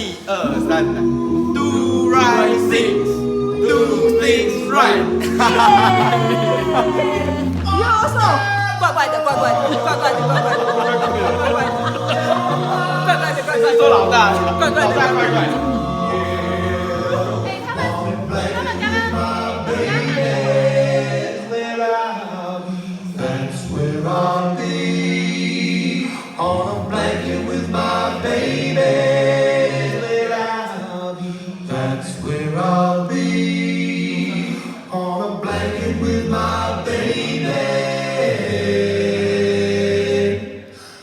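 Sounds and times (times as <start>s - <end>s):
a cappella group singing in harmony: 0.0s - 41.0s
deep bass voice singing: 0.5s - 20.8s.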